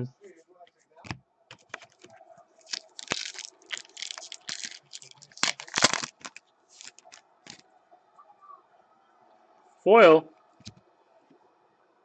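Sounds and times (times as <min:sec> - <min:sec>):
wrapper crinkling and tearing: 0:01.5 - 0:07.6.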